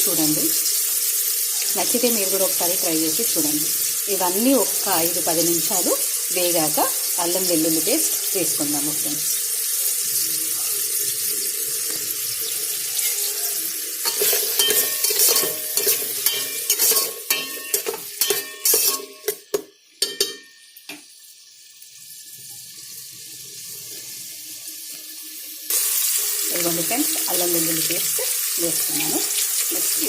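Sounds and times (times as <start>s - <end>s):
vegetables sizzling in oil: 0.0s - 30.0s
spoon knocking against pot: 14.6s - 21.0s.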